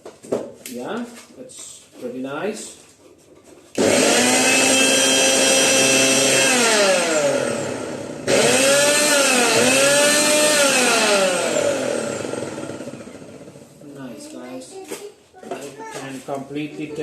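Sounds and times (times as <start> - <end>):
mixer grinder motor whine: 3.8 - 13.7.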